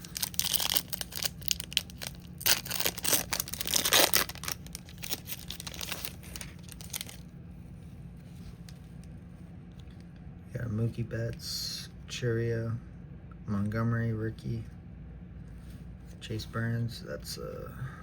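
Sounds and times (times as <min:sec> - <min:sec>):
foil wrapper tearing and crinkling: 0:00.0 - 0:07.2.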